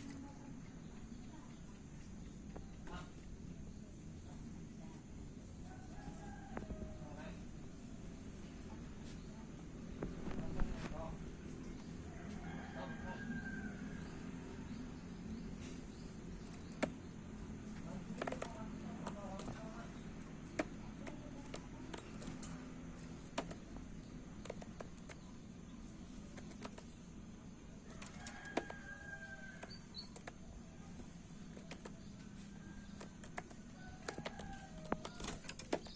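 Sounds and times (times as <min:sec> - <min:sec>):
bird moving in cage clicks: 0:20.4 - 0:23.7, 0:26.2 - 0:27.0, 0:27.9 - 0:30.4, 0:32.8 - 0:35.9.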